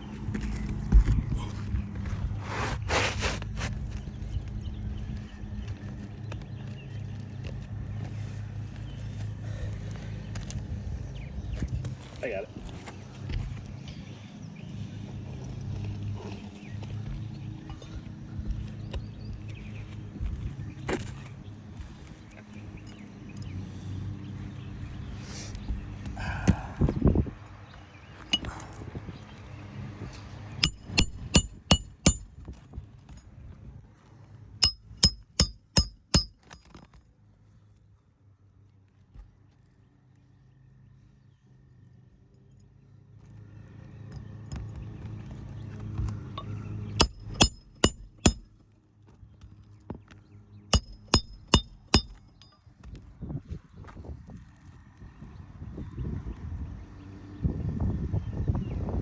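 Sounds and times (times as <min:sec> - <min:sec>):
hammer driving nails: 0:30.6 - 0:32.3, 0:34.6 - 0:36.7, 0:47.0 - 0:48.5, 0:50.8 - 0:52.5.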